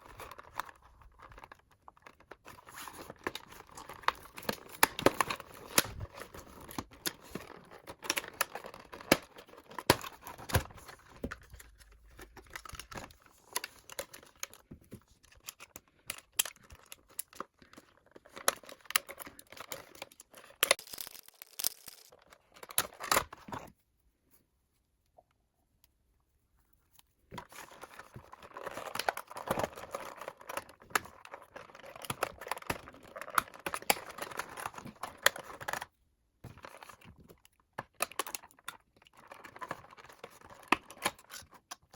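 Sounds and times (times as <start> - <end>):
packaging tearing and crinkling: 18.2 - 23.4.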